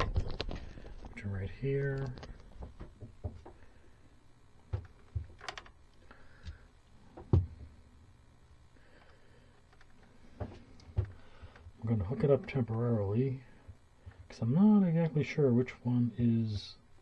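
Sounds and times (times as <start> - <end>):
clicks and knocks of handling: 0.0 - 1.2, 1.8 - 3.6, 4.7 - 5.8.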